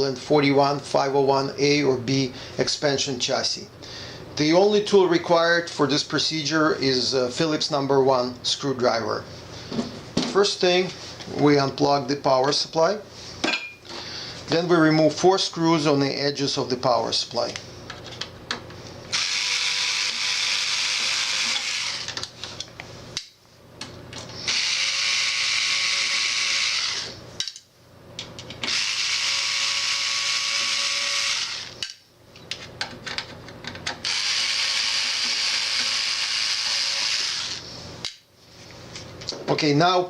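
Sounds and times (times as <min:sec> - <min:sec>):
electric screwdriver running: 0:19.1 - 0:22.2, 0:24.5 - 0:27.1, 0:28.6 - 0:31.8, 0:34.0 - 0:37.6.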